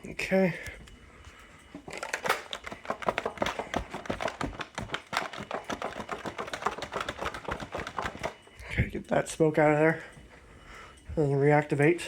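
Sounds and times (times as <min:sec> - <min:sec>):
hands tapping and clicking on plastic: 0:01.8 - 0:08.4.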